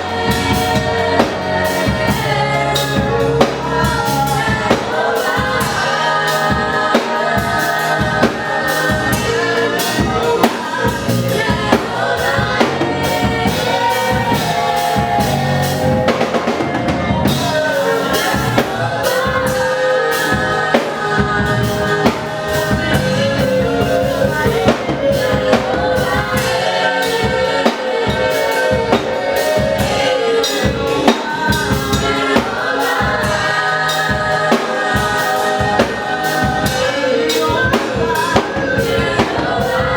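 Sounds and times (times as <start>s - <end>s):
drum kit beat: 0.0s - 39.9s
gospel choir singing: 0.0s - 39.9s.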